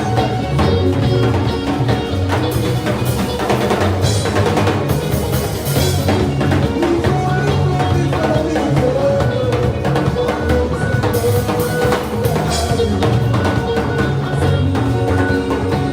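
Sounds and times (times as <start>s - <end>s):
bass line: 0.0s - 15.9s
drum beat: 0.0s - 15.9s.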